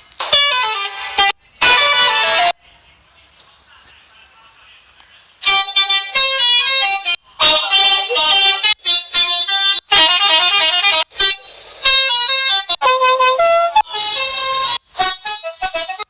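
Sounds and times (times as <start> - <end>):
multi-tone horn melody: 0.2 - 2.6, 5.4 - 16.0.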